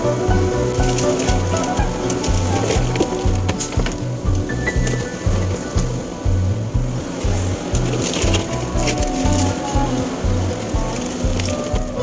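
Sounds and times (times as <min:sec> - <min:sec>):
music with pulsing bass beat: 0:00.0 - 0:12.0.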